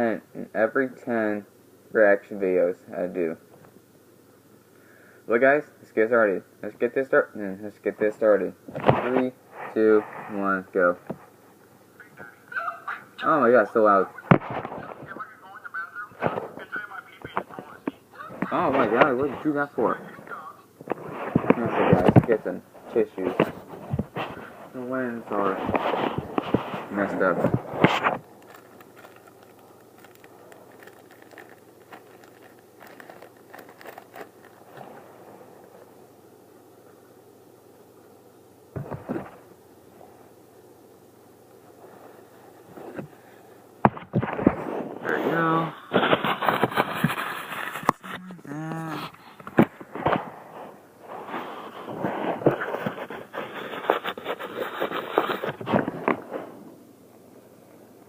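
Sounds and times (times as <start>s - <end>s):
tissue rustling on camera lens: 23.2s - 35.9s, 44.2s - 48.2s, 49.7s - 56.6s.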